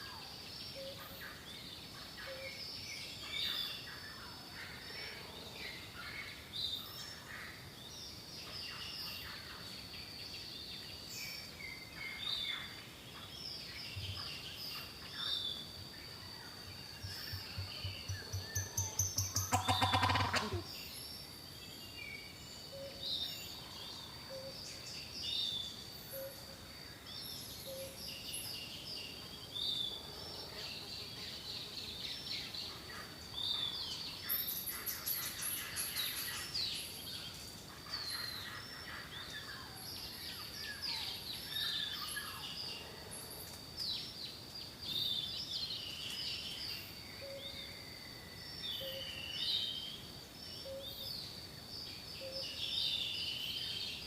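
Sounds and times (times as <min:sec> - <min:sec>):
small birds chirping: 0:00.0 - 0:54.0
turkey gobbling: 0:19.5 - 0:20.6.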